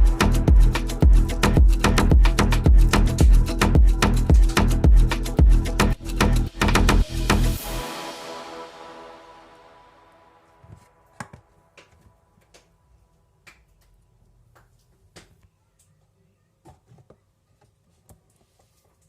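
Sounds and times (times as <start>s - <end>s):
music: 0.0s - 13.3s.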